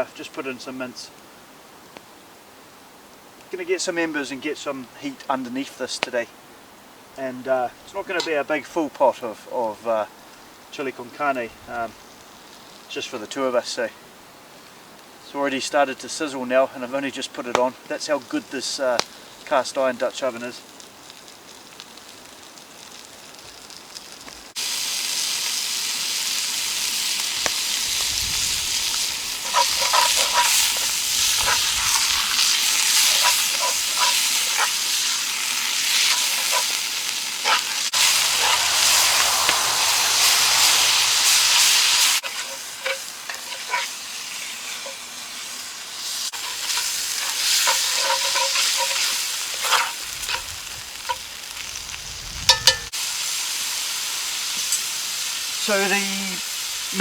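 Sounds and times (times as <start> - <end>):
meat sizzling in oil: 18.2 - 57.0
utensil scraping a pot: 28.9 - 39.4, 40.7 - 45.4, 46.0 - 51.2.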